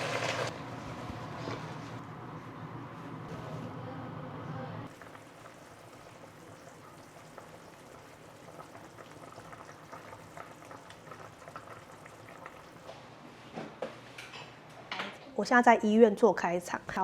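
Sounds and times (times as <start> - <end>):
pot simmering with bubbling: 0.0 - 2.1, 4.9 - 13.0.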